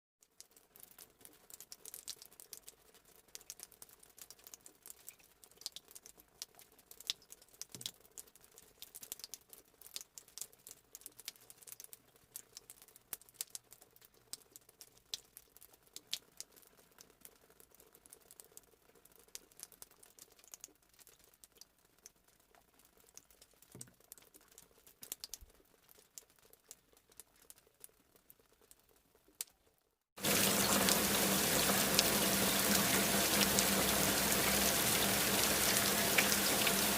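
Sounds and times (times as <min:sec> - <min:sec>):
raindrops pattering: 0:00.2 - 0:36.9
heavy rain downpour: 0:30.2 - 0:36.9.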